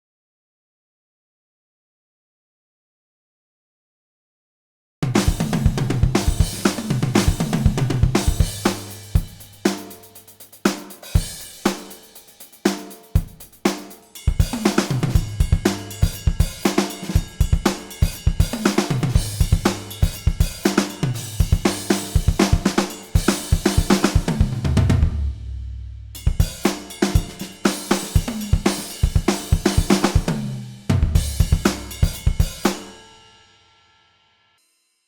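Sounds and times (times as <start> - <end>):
drum kit groove: 5.0 - 33.3.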